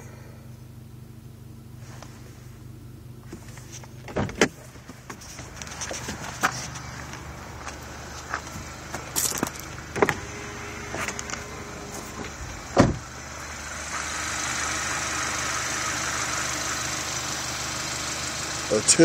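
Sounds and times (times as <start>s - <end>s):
vehicle idling: 0.0s - 19.0s
loud door-like thump: 12.7s - 13.0s.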